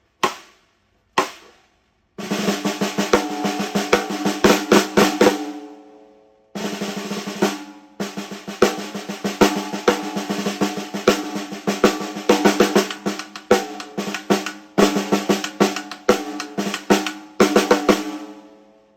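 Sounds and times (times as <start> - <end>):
snare drum roll and strokes: 2.2 - 5.4, 6.6 - 18.2.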